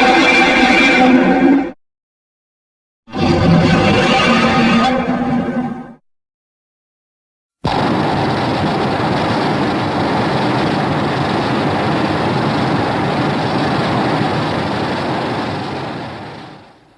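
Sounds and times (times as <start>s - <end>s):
loud steady rushing rumble: 7.6s - 16.9s.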